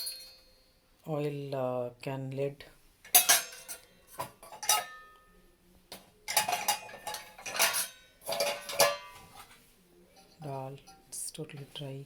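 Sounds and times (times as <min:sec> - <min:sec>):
metal dishes clinking: 0:00.0 - 0:00.6, 0:03.1 - 0:05.4, 0:06.2 - 0:09.6.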